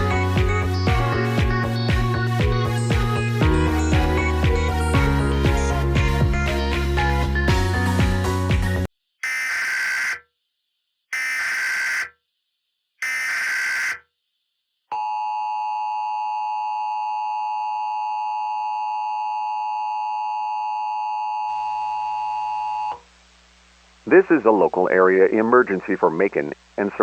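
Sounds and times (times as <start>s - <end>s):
screeching digital data bursts: 9.2s - 10.2s, 11.2s - 12.1s, 13.0s - 14.0s.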